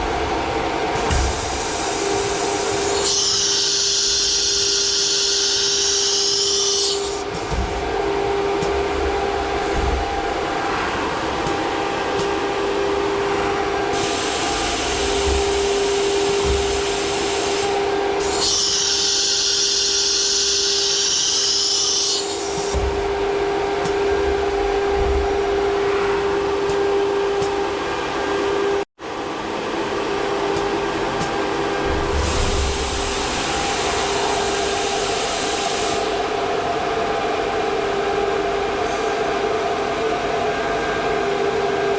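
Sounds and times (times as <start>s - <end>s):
milling machine spindle whine: 0.0s - 28.8s.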